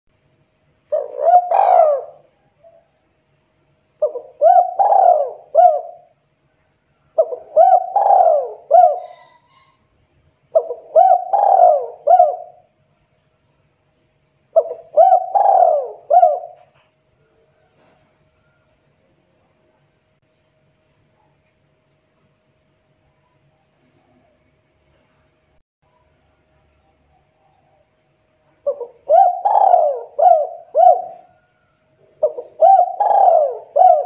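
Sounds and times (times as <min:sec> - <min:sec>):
dove cooing: 0:00.8 - 0:03.0, 0:04.0 - 0:06.2, 0:07.1 - 0:09.8, 0:10.5 - 0:12.7, 0:14.5 - 0:18.6, 0:27.1 - 0:34.0.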